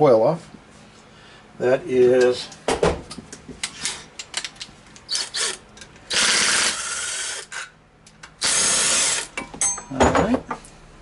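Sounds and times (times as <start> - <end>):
handheld power tool running: 5.1 - 7.7, 8.4 - 9.3.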